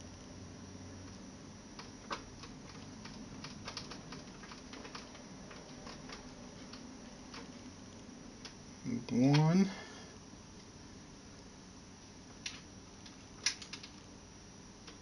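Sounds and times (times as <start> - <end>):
clicks of computer parts handled: 12.4 - 14.0.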